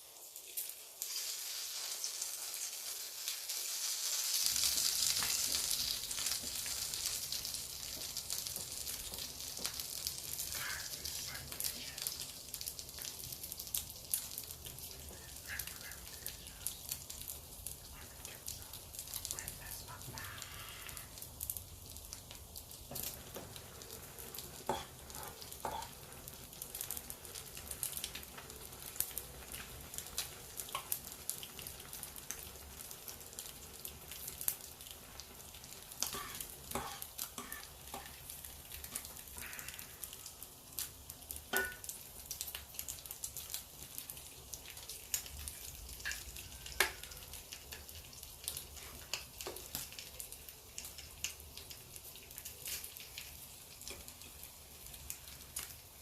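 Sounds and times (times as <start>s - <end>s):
crackles and pops of frying: 0.0s - 56.0s
food sizzling in a pan: 0.0s - 56.0s.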